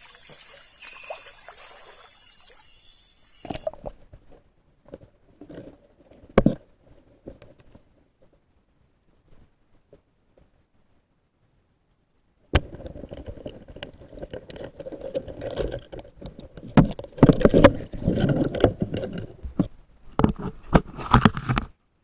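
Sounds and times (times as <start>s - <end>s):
water sloshing and splashing: 0.0s - 4.0s.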